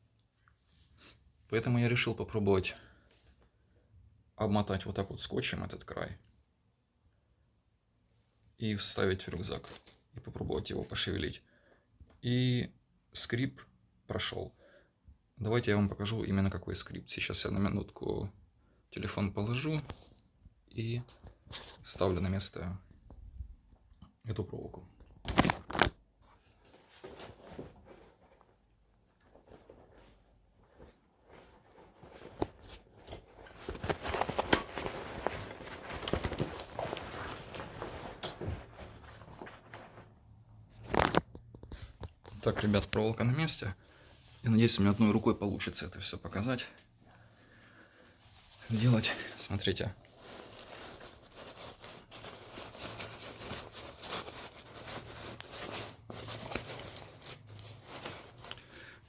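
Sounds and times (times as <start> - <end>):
rustling backpack fabric: 25.4 - 41.2, 48.0 - 59.0.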